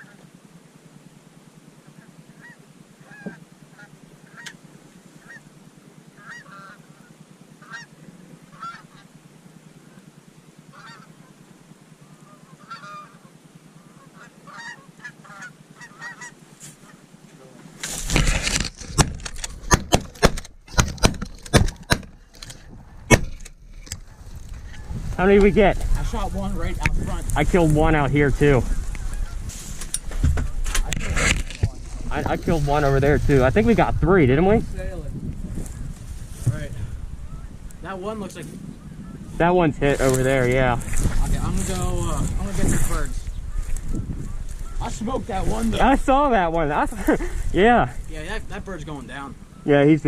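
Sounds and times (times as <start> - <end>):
geese honking: 0.0 - 0.4, 1.7 - 17.6, 24.0 - 33.9, 36.9 - 47.2
shotgun shots: 19.0 - 22.1, 23.1 - 23.4.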